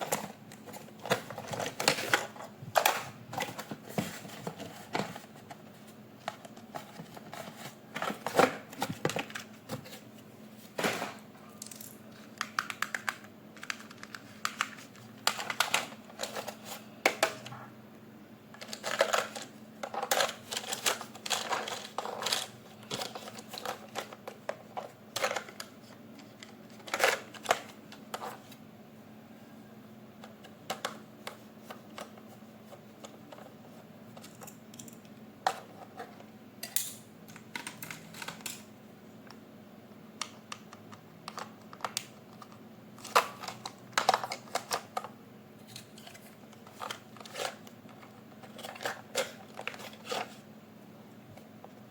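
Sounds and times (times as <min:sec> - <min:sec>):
faint steady hum: 0:00.0 - 0:51.9
clicks and knocks of toy parts: 0:18.6 - 0:28.3, 0:40.2 - 0:50.4.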